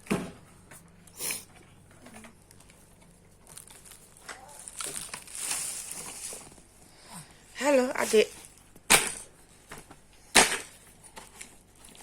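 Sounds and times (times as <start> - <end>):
plastic rustling: 1.8 - 7.1.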